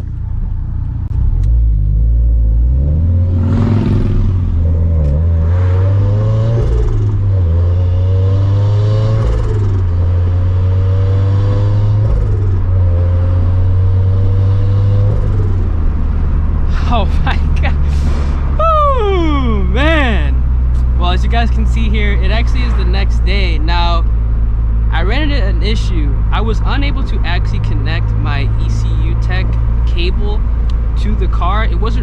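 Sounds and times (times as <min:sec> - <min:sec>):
turbo engine revving through gears: 0:01.1 - 0:15.8.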